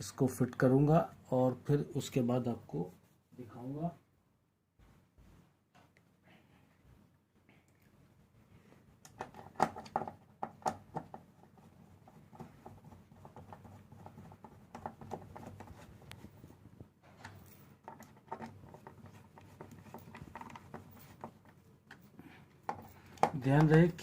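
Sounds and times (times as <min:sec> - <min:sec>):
screwdriver scratching: 0:17.9 - 0:22.0.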